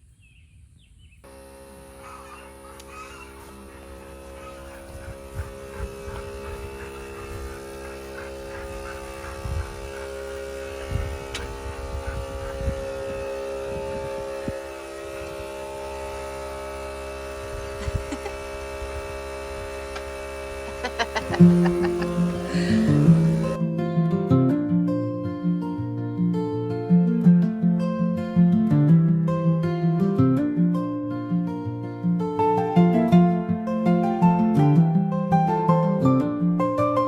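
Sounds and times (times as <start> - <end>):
steady hum of held tones: 1.2 - 23.6.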